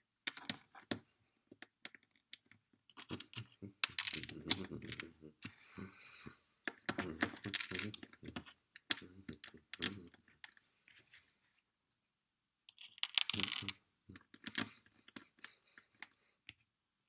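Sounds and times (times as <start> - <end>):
plastic bricks clicking and rattling: 0.3 - 5.1, 6.7 - 10.6, 12.7 - 16.6.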